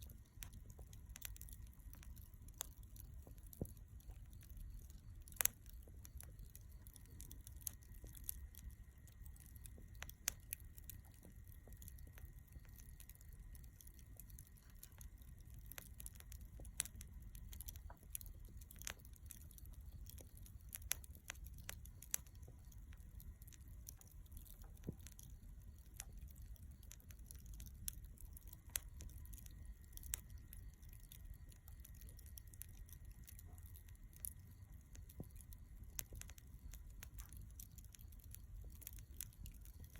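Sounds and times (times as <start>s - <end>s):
charcoal crackling and popping: 0.0s - 39.9s
faint low rumble: 0.0s - 39.9s.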